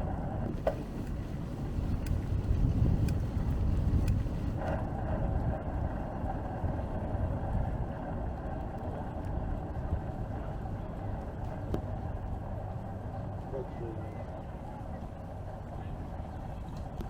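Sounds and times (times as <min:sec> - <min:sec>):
wind rumbling on microphone: 0:00.0 - 0:13.5
faint steady whine: 0:00.0 - 0:17.0.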